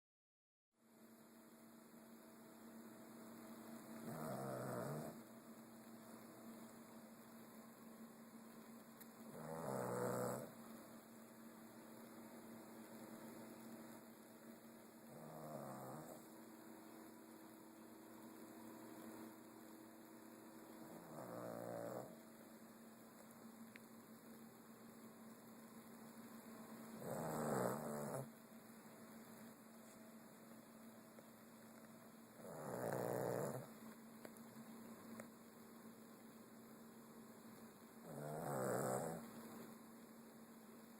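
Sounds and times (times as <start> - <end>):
pet snoring: 4.0 - 5.2, 9.3 - 10.6, 15.0 - 16.3, 20.8 - 22.2, 26.9 - 28.3, 32.3 - 33.8, 38.0 - 39.4.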